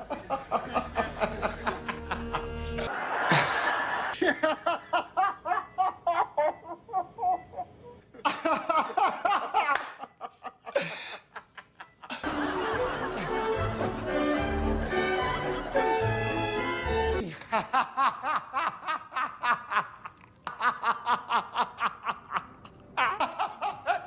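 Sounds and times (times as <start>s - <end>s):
person laughing in bursts: 0.0s - 15.5s, 17.2s - 24.0s
music: 0.6s - 2.9s, 12.2s - 17.2s.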